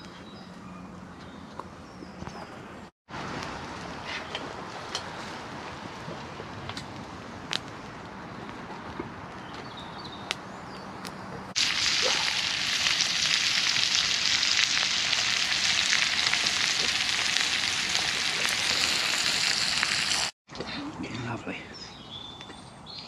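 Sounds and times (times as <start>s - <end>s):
oil sizzling deep-frying food: 11.6s - 20.4s.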